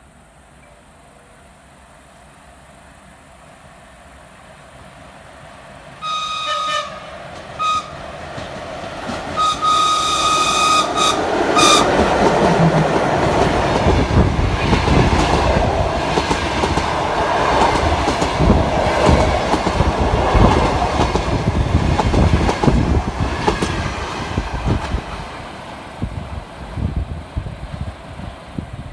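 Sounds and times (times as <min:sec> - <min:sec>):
locomotive signal blasts: 0:06.0 - 0:07.0, 0:07.6 - 0:08.0, 0:09.4 - 0:11.9
train wheels clattering: 0:07.2 - 0:25.1.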